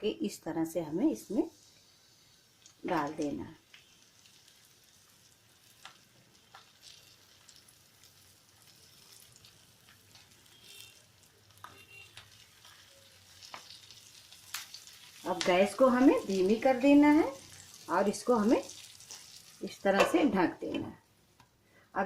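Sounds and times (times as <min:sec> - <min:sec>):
faint sizzling of frying: 0:00.0 - 0:22.0
sharp oil crackles: 0:01.1 - 0:20.0.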